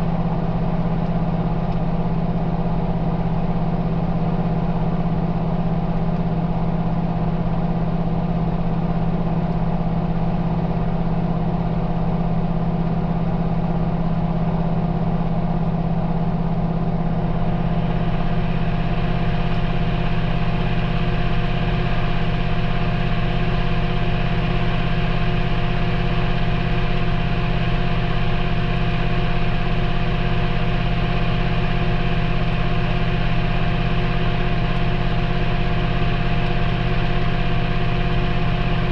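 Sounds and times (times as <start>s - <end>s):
washing machine motor hum: 12.2s - 38.9s.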